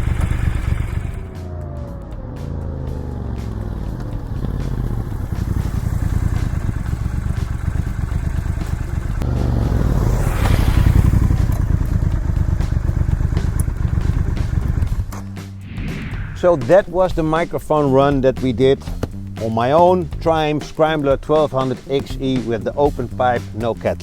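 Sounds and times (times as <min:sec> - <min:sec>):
motorcycle exhaust rumbling: 0:00.0 - 0:15.2.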